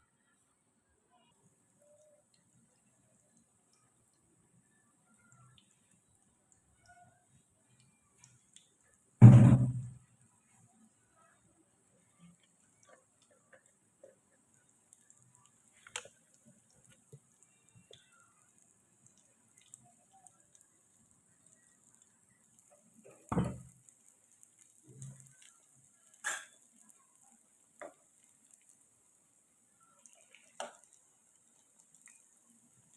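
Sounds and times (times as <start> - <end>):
loud knock: 9.2 - 10.0.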